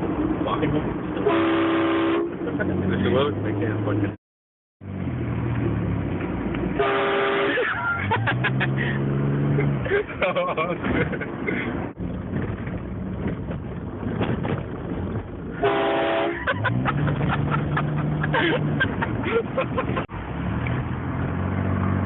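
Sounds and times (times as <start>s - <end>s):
car engine: 0.0s - 4.2s, 4.8s - 22.0s
road noise: 0.0s - 4.2s, 4.8s - 22.0s
air horn chord blast: 6.8s - 7.6s, 15.6s - 16.4s.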